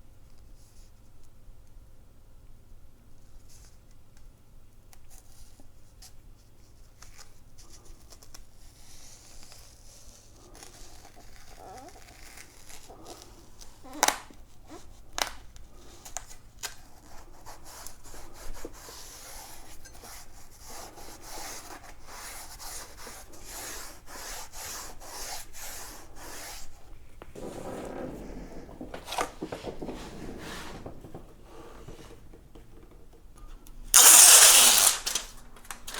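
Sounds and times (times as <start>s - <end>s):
hands rubbing and scraping pads: 17.0s - 33.2s.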